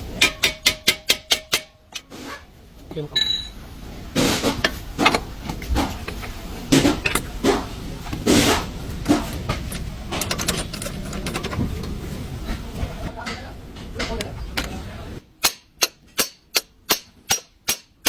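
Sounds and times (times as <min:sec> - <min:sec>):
metal tools clattering: 0:08.4 - 0:12.6.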